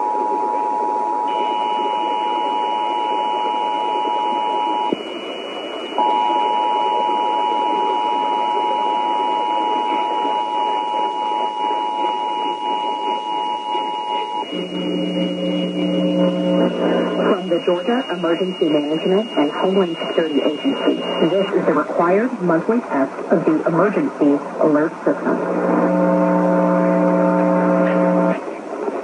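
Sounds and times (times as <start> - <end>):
two-tone attention signal: 0.0 - 22.5
broadcast hiss: 0.0 - 29.0.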